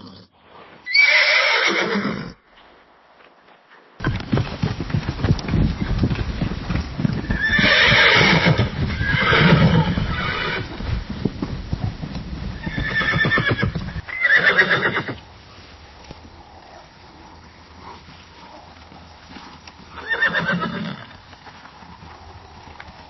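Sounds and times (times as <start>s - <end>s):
horse neighing: 0.0s - 0.3s, 0.9s - 2.4s, 7.2s - 10.8s, 12.6s - 15.2s, 19.9s - 21.2s
hooves clopping and stamping: 2.6s - 23.0s.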